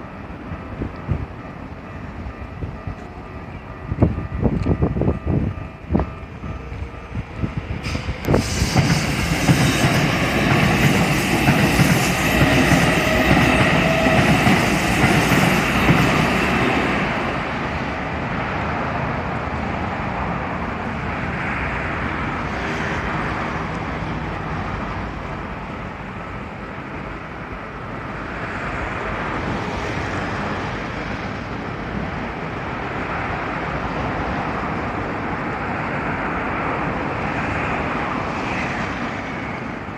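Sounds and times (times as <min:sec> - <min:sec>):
train wheels clattering over rails: 0:07.8 - 0:17.2.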